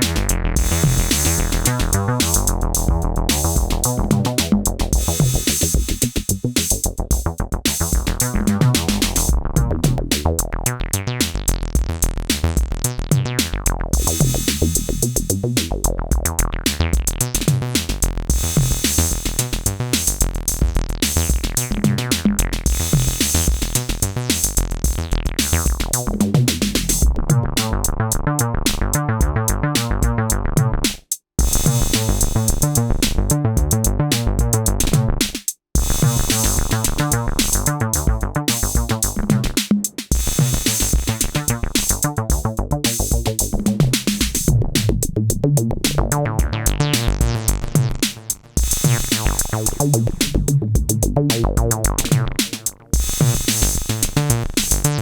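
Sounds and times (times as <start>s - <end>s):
drum machine beat: 0.0s - 27.9s, 28.6s - 55.0s
synthesizer bassline: 0.0s - 35.2s, 35.8s - 55.0s.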